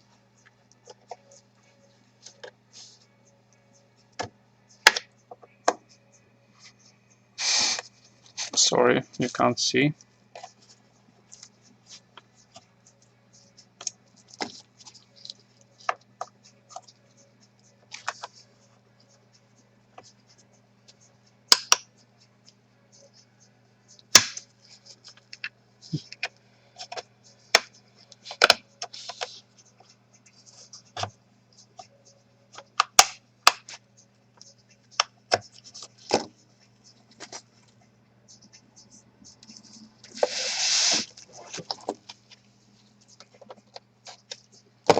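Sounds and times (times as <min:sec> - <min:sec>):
faint steady hum: 0:00.0 - 0:44.9
rustling scrape: 0:39.6 - 0:41.6.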